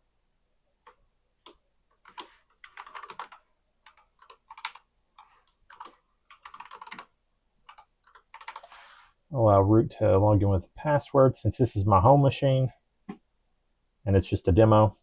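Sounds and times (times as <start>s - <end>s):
computer keyboard typing: 0.8s - 8.7s.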